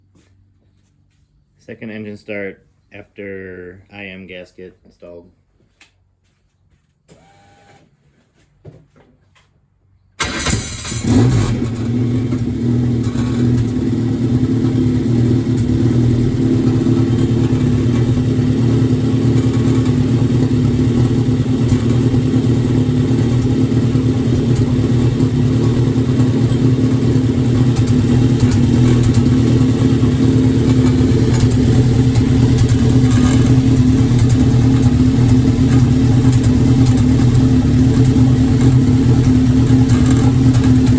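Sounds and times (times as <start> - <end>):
race car engine starting and running: 7.1 - 7.9, 10.2 - 40.9.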